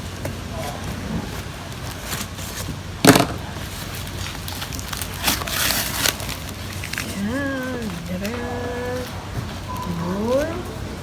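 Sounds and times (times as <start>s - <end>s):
packaging wrap crinkling: 3.6s - 10.8s.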